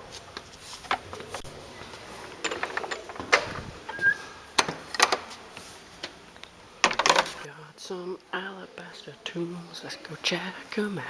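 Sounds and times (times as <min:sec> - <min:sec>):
door squeak: 0:02.7 - 0:04.4.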